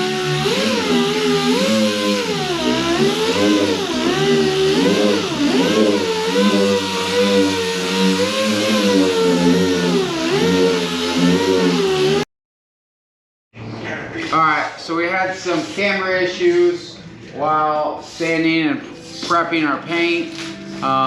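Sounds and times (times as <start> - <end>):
orbital sander running: 0.0 - 12.2.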